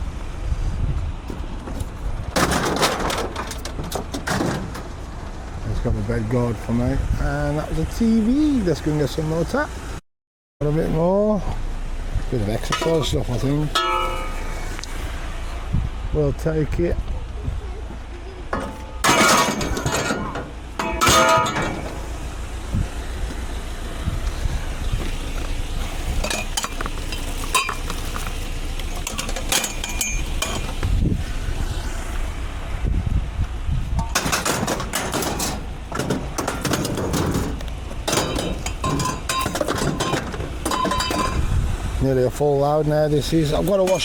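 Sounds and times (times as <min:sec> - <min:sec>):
scrap metal clanking: 0:01.2 - 0:05.2, 0:12.5 - 0:15.2, 0:18.5 - 0:22.4, 0:25.1 - 0:30.9, 0:33.9 - 0:42.0, 0:43.2 - 0:44.0
steady low rumble: 0:10.6 - 0:44.0.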